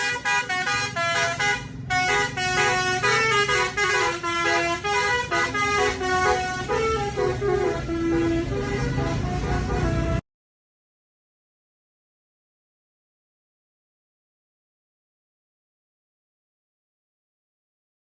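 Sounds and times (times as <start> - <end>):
musical air horn melody: 0.0 - 10.2.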